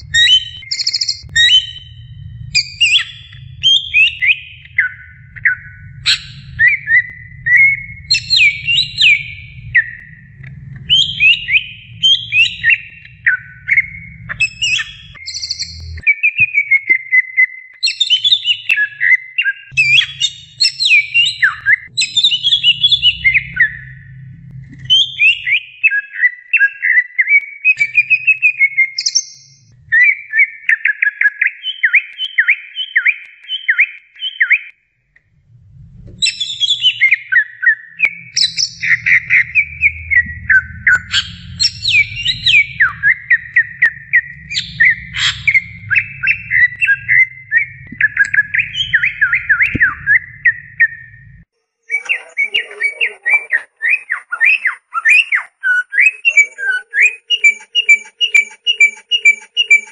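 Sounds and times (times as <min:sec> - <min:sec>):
faint low hum: 0:00.0 - 0:16.0, 0:37.6 - 0:51.4
bird singing fast song: 0:00.0 - 0:24.2, 0:24.8 - 0:34.8, 0:36.2 - 0:51.3, 0:51.9 - 0:59.9.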